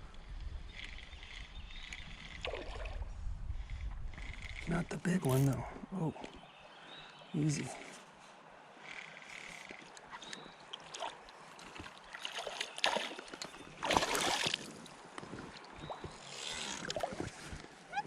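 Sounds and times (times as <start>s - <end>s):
fish splashing in water: 10.7s - 14.8s.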